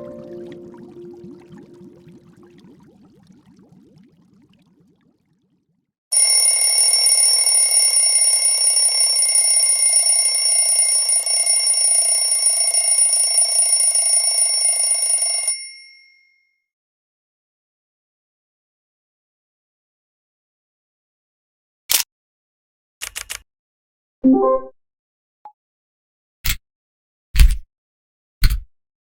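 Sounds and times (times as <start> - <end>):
telephone bell ringtone: 6.1 - 16.4.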